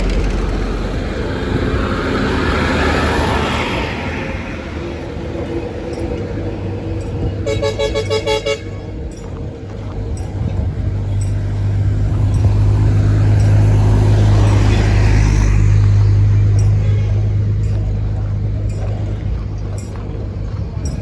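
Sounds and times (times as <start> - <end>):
heavy truck engine rumble: 0.0 - 21.0
traffic noise: 0.0 - 21.0
vehicle horn short toots: 7.4 - 8.8.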